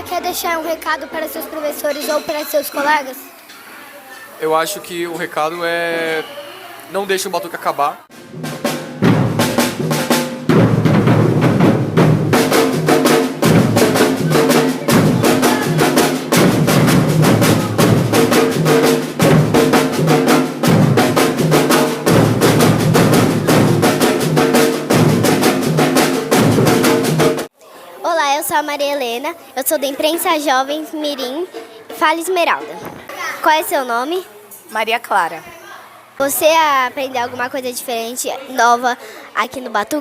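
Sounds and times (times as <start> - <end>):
percussion ensemble drumming: 8.1 - 27.5, 31.4 - 32.9.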